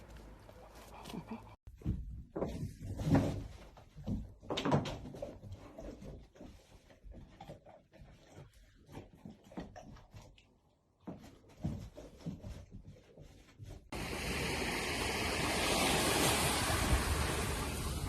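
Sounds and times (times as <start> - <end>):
rushing wind or surf: 14.0 - 18.0.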